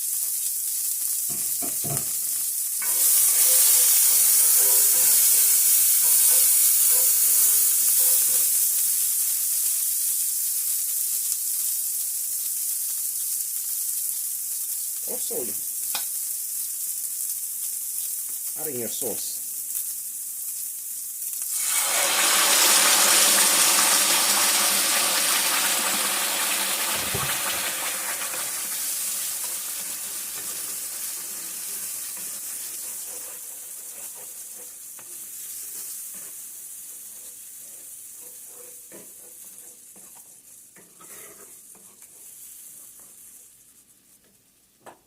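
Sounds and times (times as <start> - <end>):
sauce sizzling in hot oil: 0.0 - 45.0
spoon stirring and tapping in pan: 1.3 - 2.2, 38.2 - 42.3.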